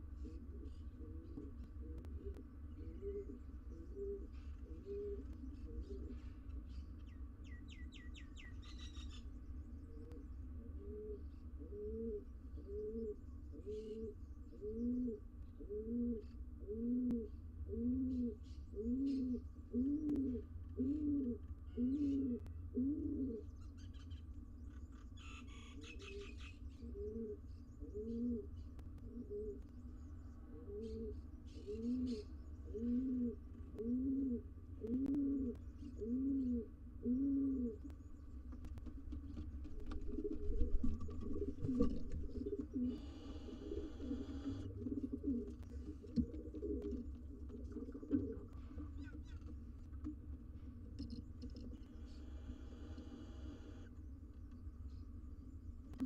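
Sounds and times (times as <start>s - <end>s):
pigeon cooing: 0.0s - 6.3s, 9.9s - 23.5s, 25.2s - 29.6s, 30.5s - 37.9s, 39.9s - 49.5s
steady low hum: 0.0s - 56.0s.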